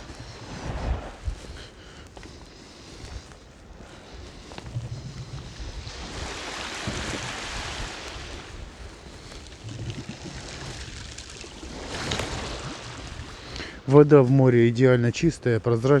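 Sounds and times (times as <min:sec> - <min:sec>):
wave washing up shore: 0:00.0 - 0:01.8, 0:05.4 - 0:13.6
wind rumbling on microphone: 0:00.0 - 0:15.6.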